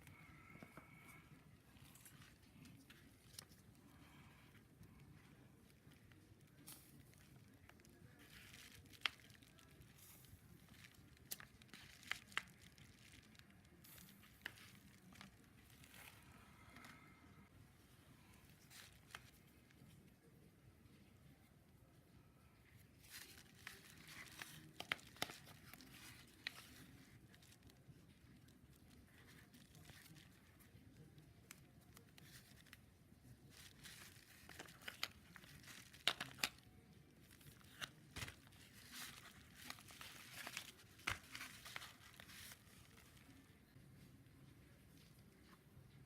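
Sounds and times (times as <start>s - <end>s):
faint rustling and crinkling: 0.0s - 46.0s.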